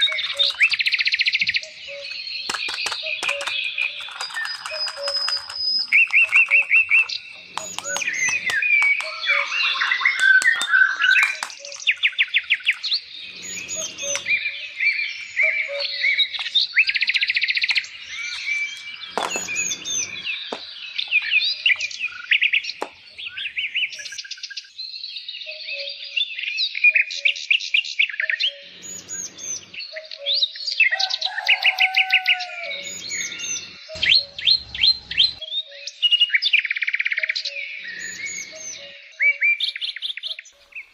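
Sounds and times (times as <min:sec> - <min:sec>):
songbirds chirping and trilling: 0:00.0 - 0:40.9
low rumbles: 0:34.0 - 0:35.4.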